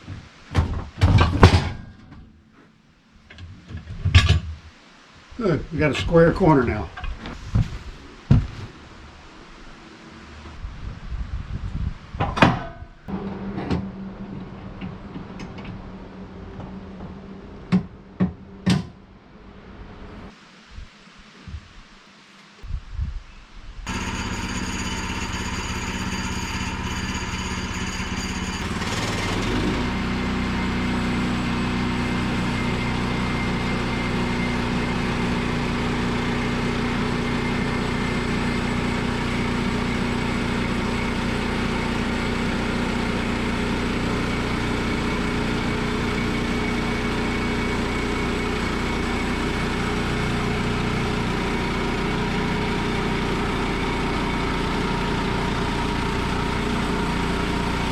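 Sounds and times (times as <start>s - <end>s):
sawmill engine running: 13.1s - 18.1s, 23.9s - 57.9s
band blade sawing through log: 23.9s - 30.0s.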